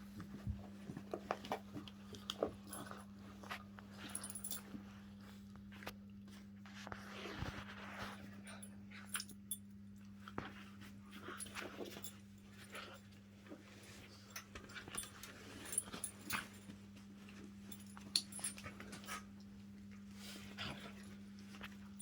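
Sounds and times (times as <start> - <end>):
scuffling and knocks: 0.0 - 8.6.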